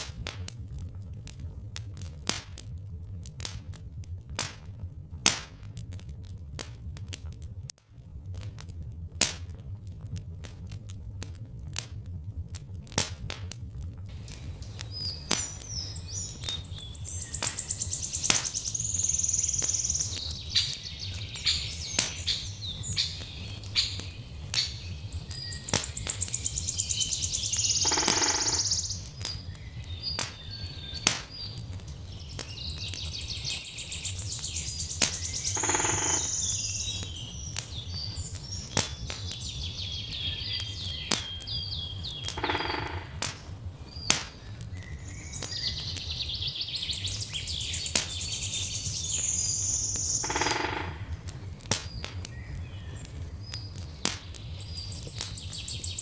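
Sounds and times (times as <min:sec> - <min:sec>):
steady low rumble: 0:00.0 - 0:56.0
wood fire crackling: 0:00.0 - 0:56.0
songbirds singing: 0:14.1 - 0:56.0.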